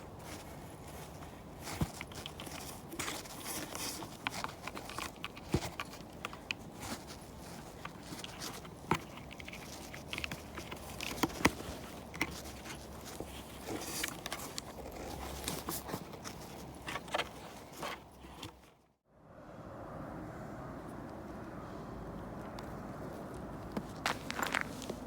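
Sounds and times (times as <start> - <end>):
clicks and rustling handling noise: 0.0 - 18.9, 22.4 - 25.0
footsteps walking: 23.7 - 25.0.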